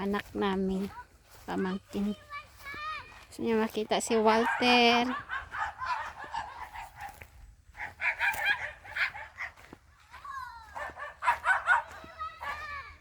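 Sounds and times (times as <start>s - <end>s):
poultry clucking and chirping: 4.4s - 7.2s.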